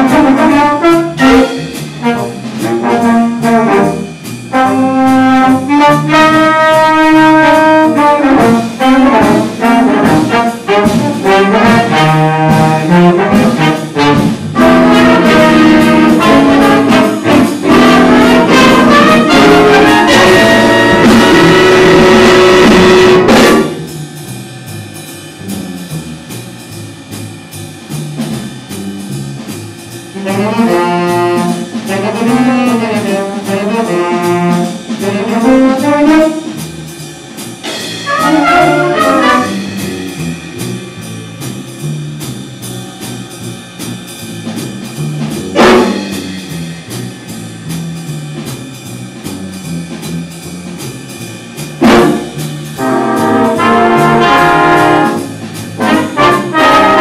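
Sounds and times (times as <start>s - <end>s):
jazz brass section: 0.0s - 57.0s
low bass line: 0.0s - 57.0s.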